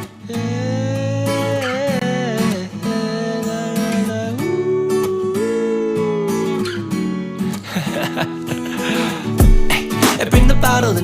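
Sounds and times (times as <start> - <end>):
guitar-led pop music: 0.0 - 11.0
heavy low beat: 9.4 - 10.9.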